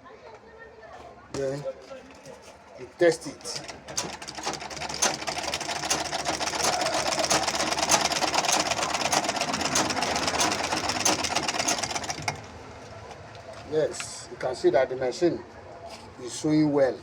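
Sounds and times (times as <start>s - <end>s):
sewing machine stitching: 3.1s - 12.6s.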